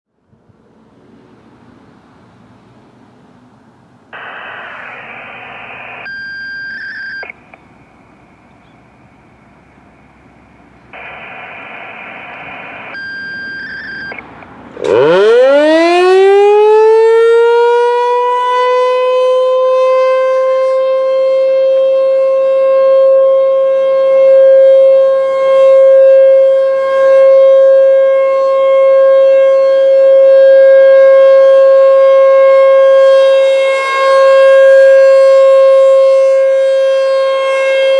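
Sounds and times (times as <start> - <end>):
hissy bursts with beeps: 4.2 - 7.4, 11.0 - 14.2
rotating warning siren wailing: 11.0 - 37.9.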